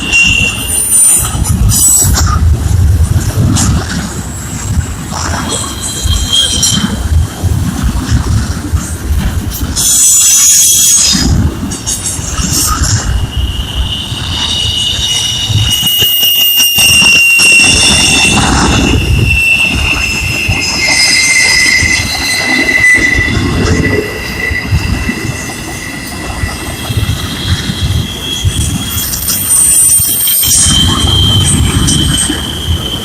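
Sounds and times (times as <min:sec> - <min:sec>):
rumble of wheels on track: 0:00.0 - 0:33.0
train wheels squealing on rails: 0:00.0 - 0:33.0.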